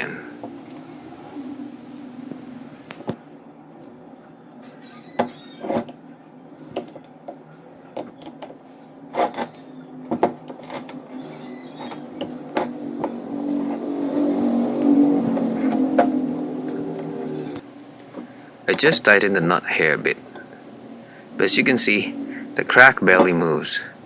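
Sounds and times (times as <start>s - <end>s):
vehicle engine running: 11.9s - 19.4s, 20.1s - 24.0s.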